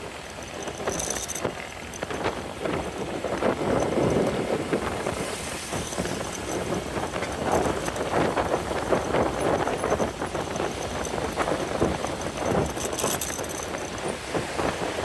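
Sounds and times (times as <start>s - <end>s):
road noise: 0.0s - 15.0s
wind rushing over microphone: 0.0s - 15.0s.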